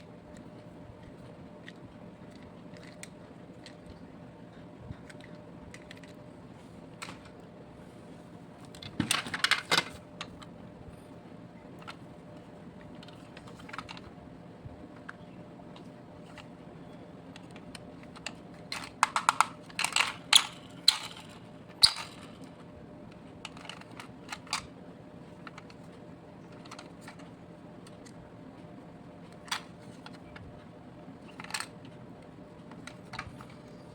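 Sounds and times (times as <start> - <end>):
small toy parts clattering: 1.0 - 3.9, 5.0 - 6.2, 8.7 - 10.5, 12.8 - 14.1, 17.3 - 24.7, 25.3 - 28.2, 29.2 - 30.4, 31.2 - 32.0, 32.6 - 33.8.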